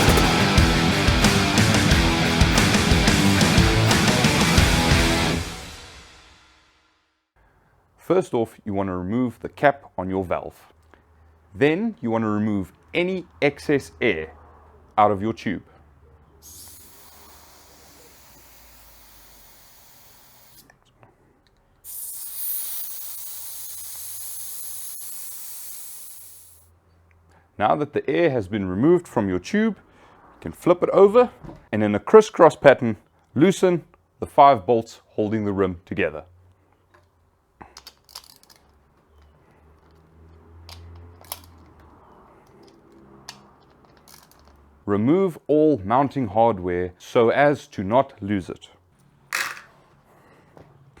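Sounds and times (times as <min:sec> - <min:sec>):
air hissing from tyre valve: 0:16.4 - 0:20.7, 0:21.8 - 0:26.7
sharp metallic clicks: 0:40.7 - 0:44.6.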